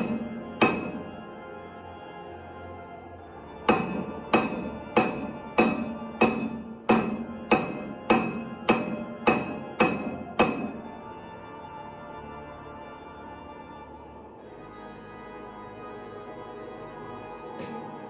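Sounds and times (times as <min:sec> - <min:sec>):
hammer striking steel on anvil: 0:00.0 - 0:01.2, 0:03.7 - 0:10.9, 0:17.6 - 0:18.0
background music: 0:00.0 - 0:18.0.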